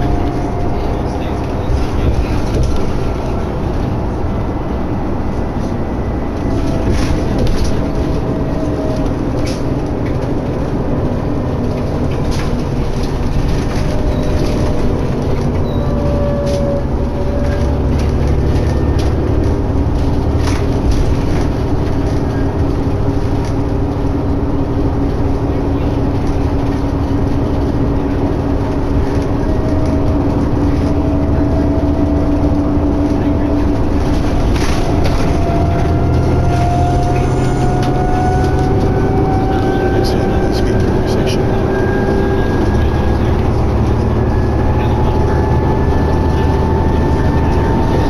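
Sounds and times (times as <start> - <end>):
bus engine and road rumble: 0.0 - 48.0
constant hum: 0.0 - 48.0
higher hum: 0.0 - 48.0
thin whine rising in pitch: 34.9 - 47.9.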